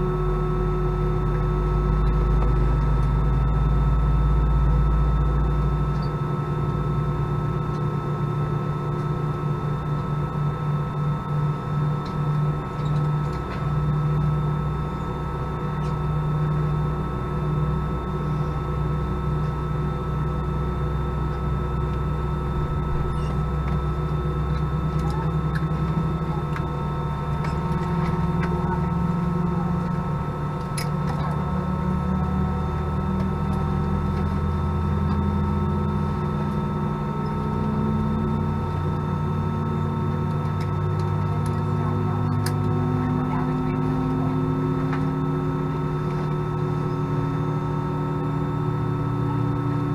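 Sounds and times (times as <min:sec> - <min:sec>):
aircraft cabin engine hum: 0:00.0 - 0:49.9
low rising tone: 0:21.6 - 0:30.5.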